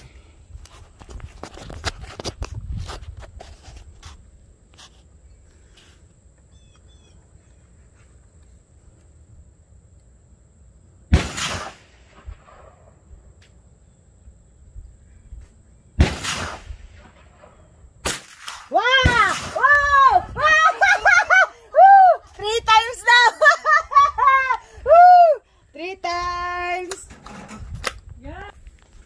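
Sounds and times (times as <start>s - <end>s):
rifle shots echoing: 11.1s - 12.9s, 16.0s - 19.6s.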